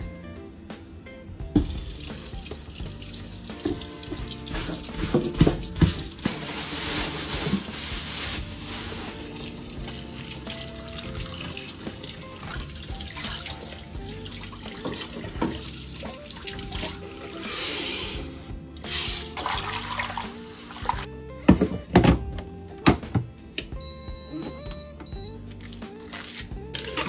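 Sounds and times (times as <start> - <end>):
background music: 0.0 - 27.0
tap running into sink: 1.6 - 17.4
water splashing: 1.6 - 21.1.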